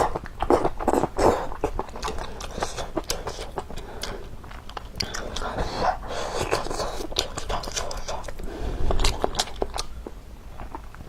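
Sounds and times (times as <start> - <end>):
wet mouth clicks: 0.0 - 5.6, 6.3 - 11.0
close chewing: 0.0 - 11.0.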